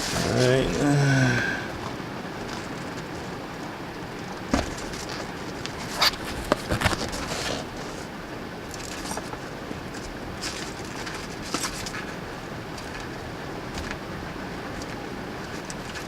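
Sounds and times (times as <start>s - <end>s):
steady background hum: 0.0s - 16.0s.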